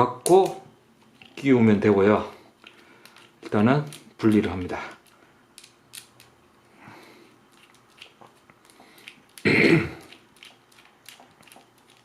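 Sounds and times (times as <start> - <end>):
person coughing: 9.4 - 10.1.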